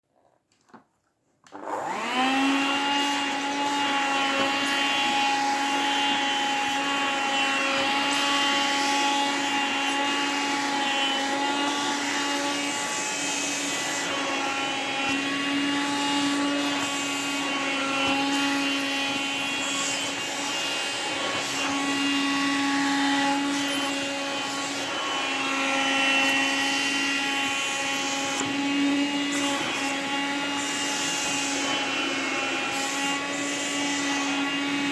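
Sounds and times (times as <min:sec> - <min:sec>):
vacuum cleaner motor whine: 0:01.5 - 0:34.9.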